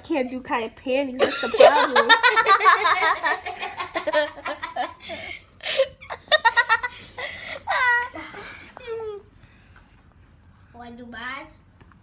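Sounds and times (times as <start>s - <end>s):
kids laughing and giggling: 1.2s - 9.3s.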